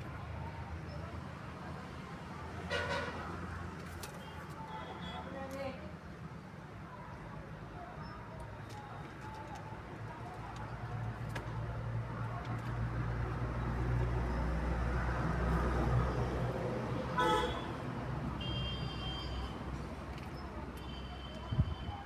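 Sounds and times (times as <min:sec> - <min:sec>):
vehicle engine rumble passing: 0:11.0 - 0:18.4
horn toot: 0:17.2 - 0:17.8.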